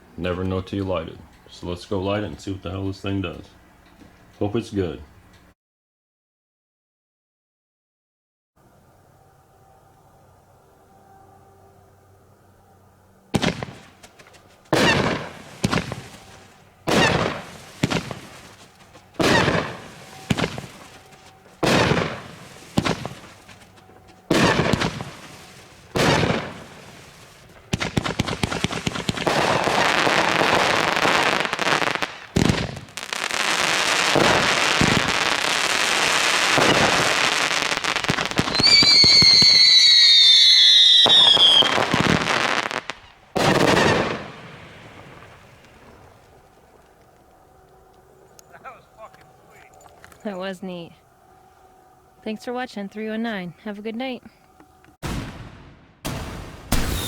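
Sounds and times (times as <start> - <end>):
firework shots and bursts: 13.4 - 14.0, 14.7 - 23.5, 24.3 - 45.9, 55.0 - 57.0
falling firework whistle: 13.4 - 45.3, 56.1 - 57.0
rapid firework crackling: 13.4 - 46.5, 55.1 - 57.0.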